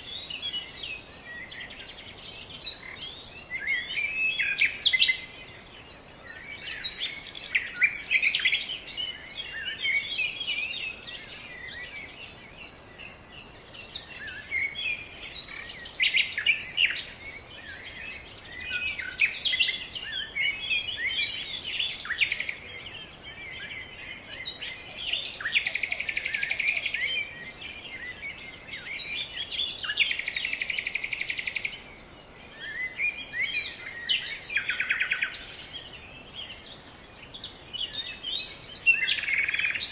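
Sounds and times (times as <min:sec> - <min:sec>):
birds chirping and singing: 0:00.0 - 0:39.9.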